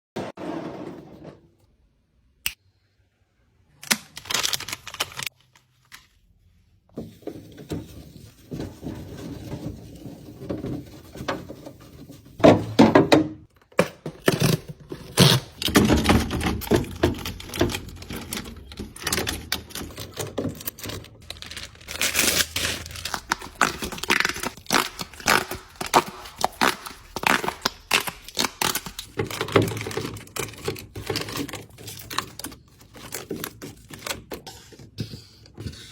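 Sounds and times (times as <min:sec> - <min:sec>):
plastic packaging crinkling: 0:03.8 - 0:06.2, 0:14.3 - 0:34.4
containers clicking and knocking: 0:23.0 - 0:35.7.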